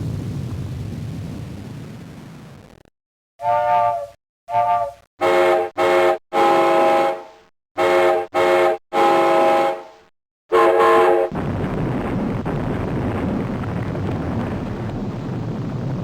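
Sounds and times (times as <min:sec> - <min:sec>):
multi-tone horn blasts: 0:03.4 - 0:11.3.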